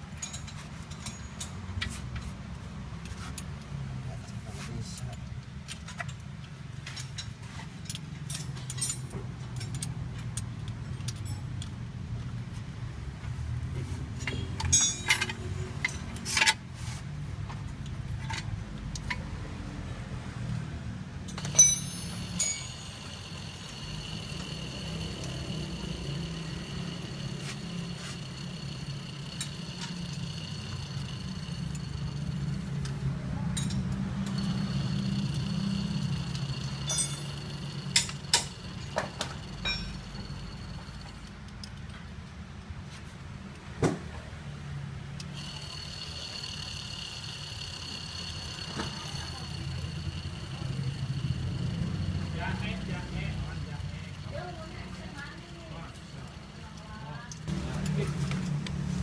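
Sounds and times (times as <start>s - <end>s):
car engine idling: 21.4s - 41.4s, 45.4s - 59.0s.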